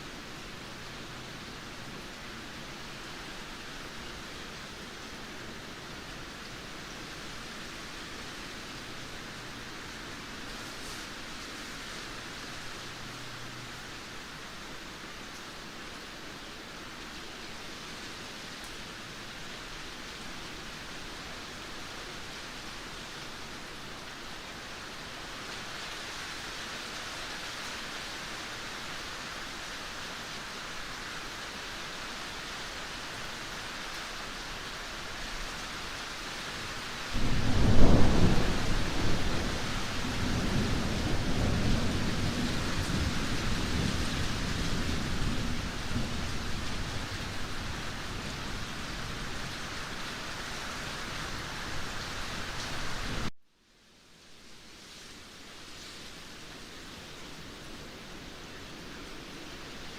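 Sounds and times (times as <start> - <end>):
rain hissing: 0.0 - 53.3, 53.9 - 59.9
thunder clap and rumble: 37.2 - 47.6.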